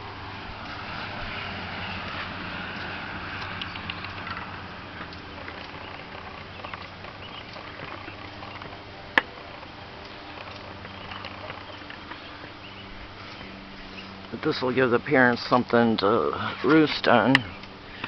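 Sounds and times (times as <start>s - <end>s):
steady low hum: 0.0s - 18.0s
stick rustling and ticking: 1.9s - 12.4s.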